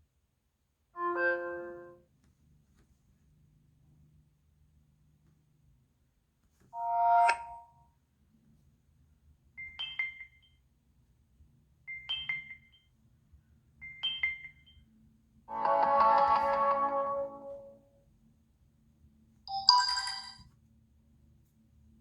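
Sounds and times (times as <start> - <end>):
phone ringtone melody: 1.0 - 2.0, 6.8 - 7.7, 15.5 - 17.3.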